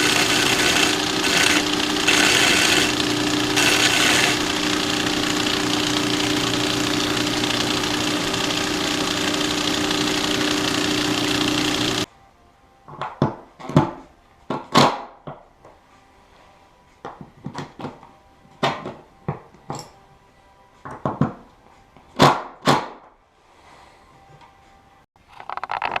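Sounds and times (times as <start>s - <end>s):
wooden parts and tools clattering: 25.2s - 26.0s.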